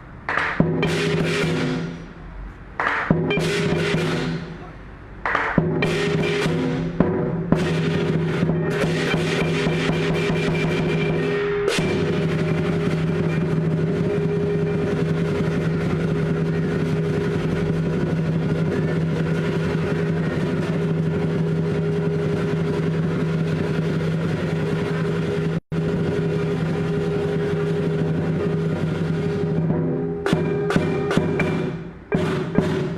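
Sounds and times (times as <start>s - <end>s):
cymbals clashing: 0.0s - 32.9s
drum roll: 0.0s - 32.9s
gong ringing: 7.6s - 24.0s, 24.6s - 32.8s.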